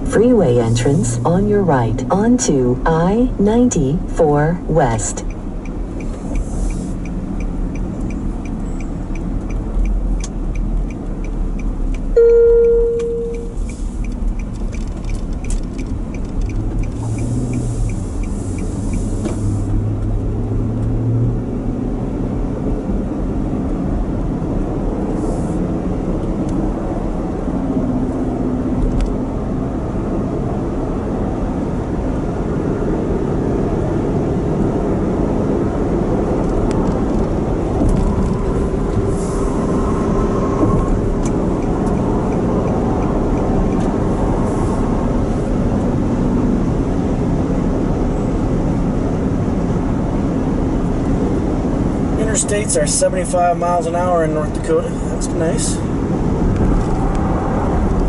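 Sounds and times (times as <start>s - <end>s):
engine note rising: 0.0s - 5.2s
turn signal ticking: 0.0s - 21.5s, 36.2s - 46.2s
road noise inside vehicle: 0.0s - 58.0s
short beep: 12.2s - 13.6s.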